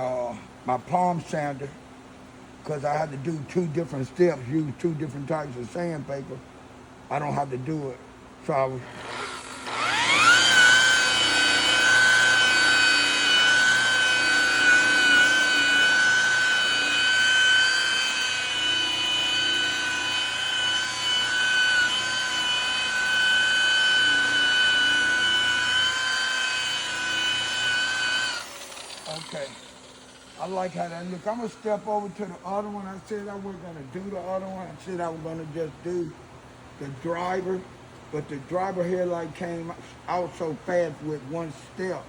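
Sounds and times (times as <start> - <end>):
rotary buffer whining: 7.2 - 42.0.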